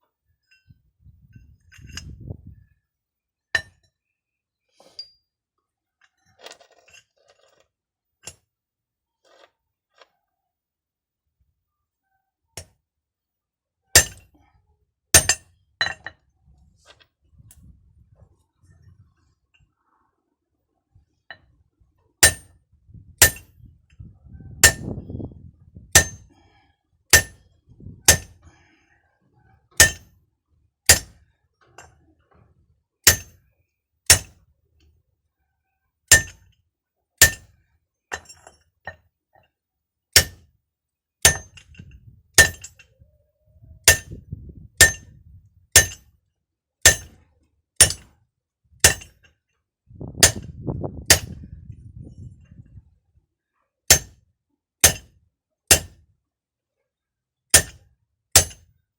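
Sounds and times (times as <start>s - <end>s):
hammer striking metal: 14.0s - 14.2s, 15.2s - 15.4s, 22.2s - 22.5s, 26.0s - 26.2s, 27.2s - 27.4s, 29.8s - 30.0s, 30.9s - 31.2s, 33.1s - 33.3s, 34.1s - 34.3s, 36.1s - 36.4s, 37.2s - 37.5s, 40.2s - 40.4s, 41.3s - 41.6s, 42.4s - 42.7s, 43.9s - 44.2s, 44.8s - 45.1s, 45.8s - 46.0s, 46.9s - 47.2s, 47.8s - 48.1s, 48.8s - 49.1s, 50.2s - 50.4s, 51.1s - 51.4s, 53.9s - 54.2s, 54.8s - 55.1s, 55.7s - 56.0s, 57.6s - 57.8s, 58.4s - 58.6s.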